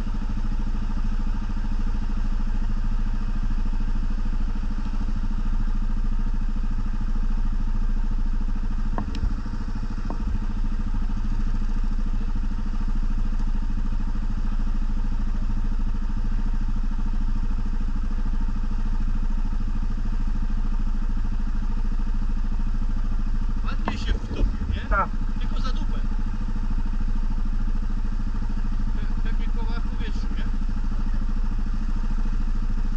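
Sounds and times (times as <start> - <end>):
atv engine running: 0.0 - 32.9.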